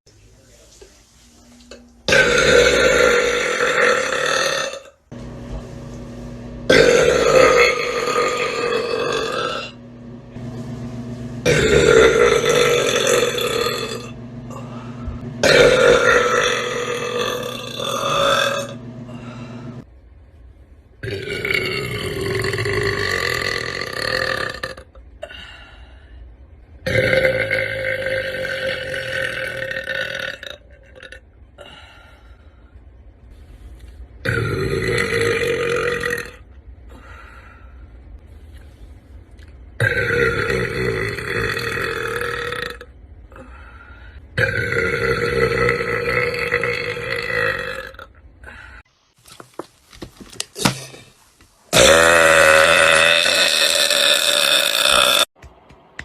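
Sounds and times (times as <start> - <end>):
person belching loudly: 2.1 - 5.0, 6.7 - 9.8, 11.5 - 14.1, 15.4 - 18.8, 21.0 - 25.0, 26.8 - 31.2, 34.2 - 36.4, 39.8 - 42.9, 44.4 - 48.2, 51.7 - 55.3.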